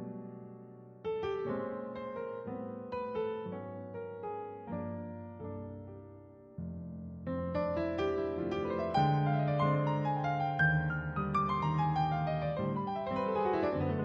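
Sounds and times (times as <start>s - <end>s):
slow gentle piano music: 0.0s - 14.0s.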